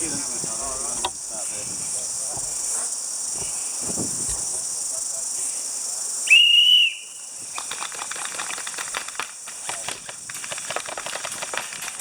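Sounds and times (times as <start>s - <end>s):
insects chirring: 0.0s - 12.0s
whistle blast: 6.3s - 7.3s
rapid rustling and ticking: 7.6s - 12.0s.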